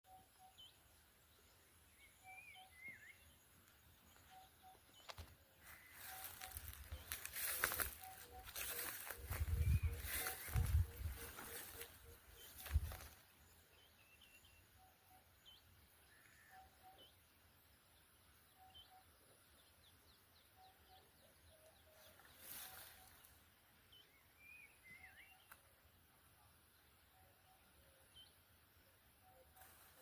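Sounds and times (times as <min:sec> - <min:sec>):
birds chirping and whistling: 0:04.2 - 0:13.2.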